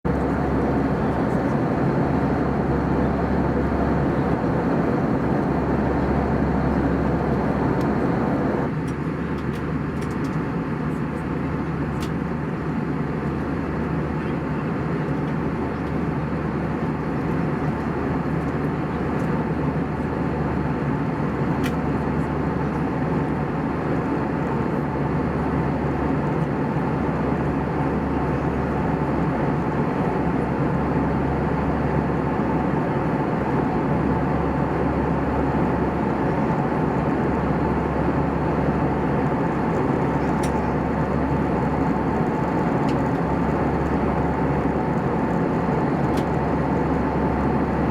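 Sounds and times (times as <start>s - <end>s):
airplane cabin rushing noise: 0.1s - 10.4s, 35.3s - 47.9s.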